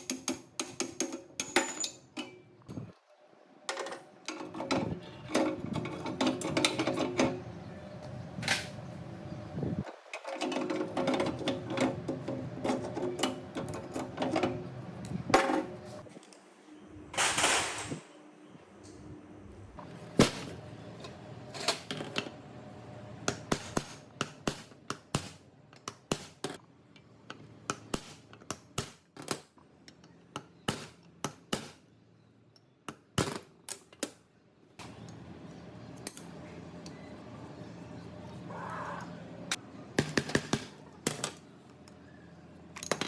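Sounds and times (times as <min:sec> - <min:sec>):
tools clicking and knocking: 0:00.0 - 0:02.9, 0:03.7 - 0:07.4.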